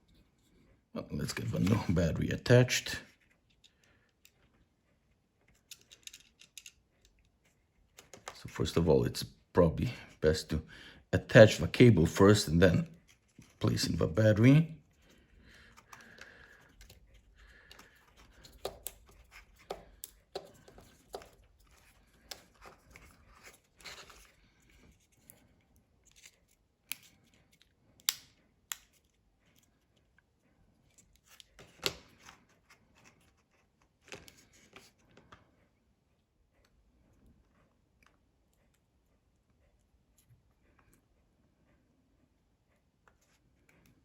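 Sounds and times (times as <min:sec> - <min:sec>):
small tools clicking and tapping: 0:05.5 - 0:07.3, 0:17.6 - 0:23.0.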